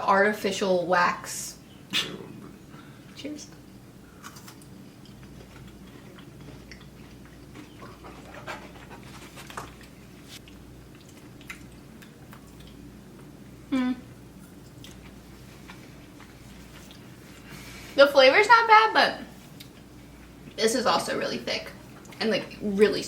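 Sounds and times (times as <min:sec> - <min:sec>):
crunchy chewing: 0:03.6 - 0:13.3.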